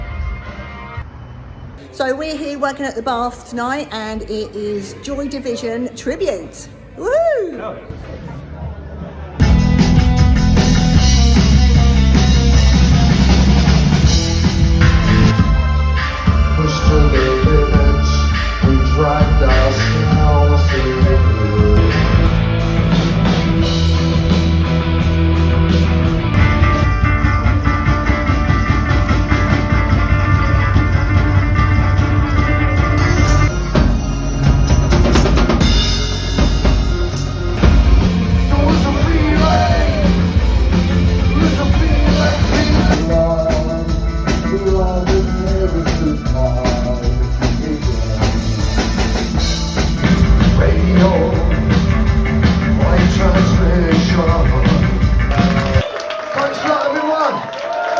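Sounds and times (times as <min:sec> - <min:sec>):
bass guitar: 0:00.0 - 0:01.1, 0:09.3 - 0:55.8
rock band playing: 0:00.0 - 0:01.1, 0:09.4 - 0:55.9
drum kit: 0:09.4 - 0:55.8
person singing: 0:15.3 - 0:22.3, 0:38.2 - 0:49.2, 0:49.8 - 0:55.6.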